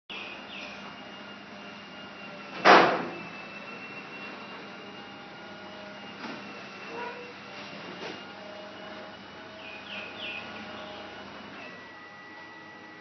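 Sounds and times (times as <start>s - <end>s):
garage door opener motor humming: 0.1s - 13.0s
loud clunk: 2.6s - 3.2s.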